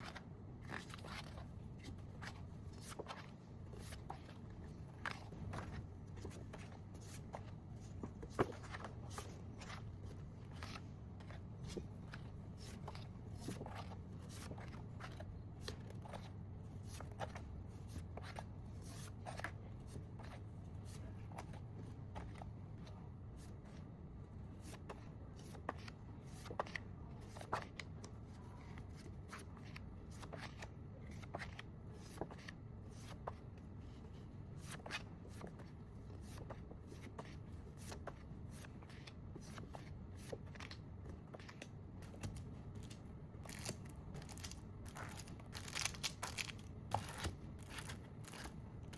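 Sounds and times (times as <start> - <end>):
packaging rustling and crinkling: 43.5 - 48.5.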